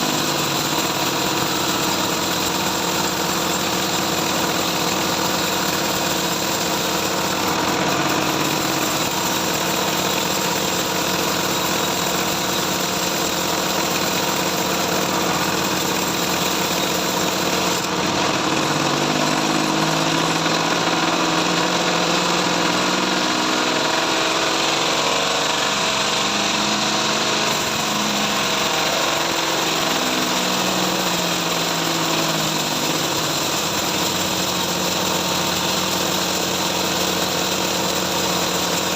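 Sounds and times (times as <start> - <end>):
sawmill machine hum: 0.0 - 38.9.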